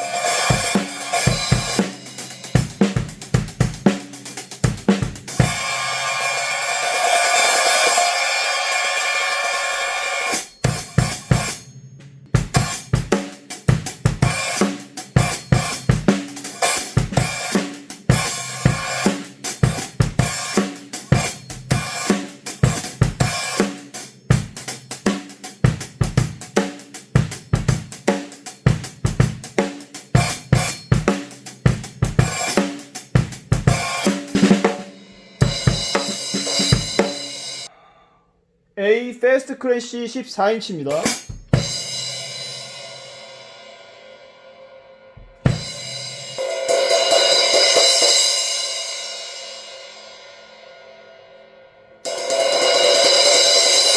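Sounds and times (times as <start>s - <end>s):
drum kit groove: 0.0s - 37.7s, 38.9s - 43.2s, 45.2s - 49.0s, 52.1s - 53.9s
cymbal struck and ringing: 5.5s - 12.8s.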